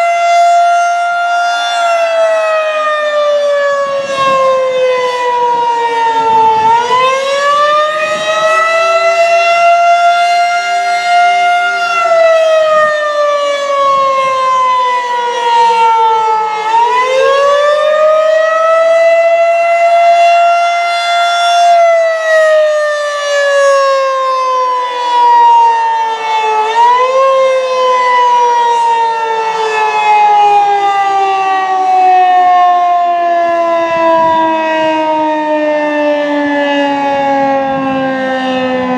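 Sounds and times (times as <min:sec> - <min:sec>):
rotating warning siren: 0:00.0 - 0:38.9.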